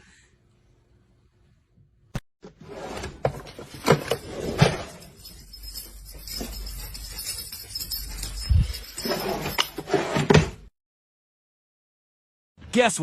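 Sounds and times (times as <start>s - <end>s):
objects clattering and knocking: 2.5s - 7.1s.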